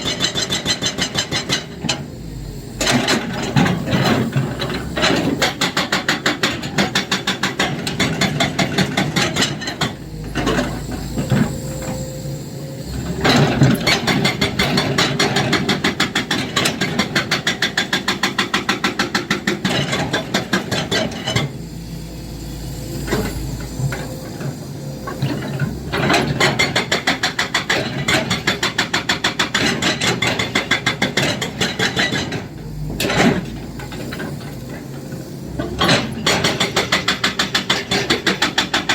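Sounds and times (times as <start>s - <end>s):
excavator engine running: 0.0s - 38.9s
hydraulic breaker hammering: 35.7s - 38.9s.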